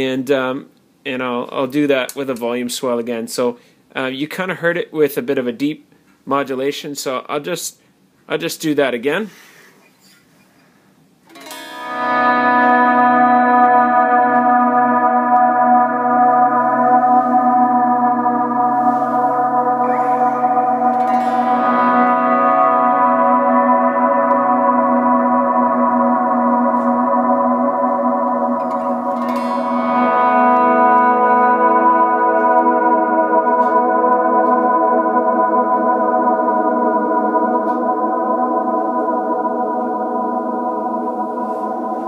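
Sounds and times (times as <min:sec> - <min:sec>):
electric guitar chords with reverb: 0:11.3 - 0:42.0.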